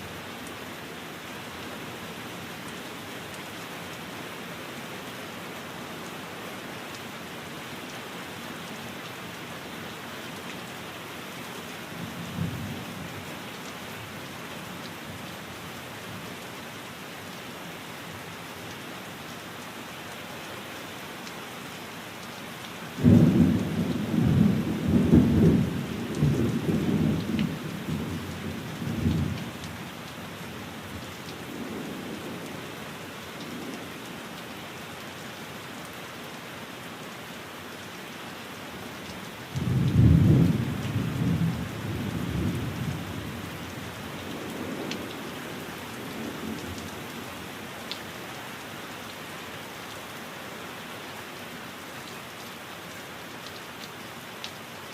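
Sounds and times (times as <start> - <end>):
steady rain: 0.0 - 54.9.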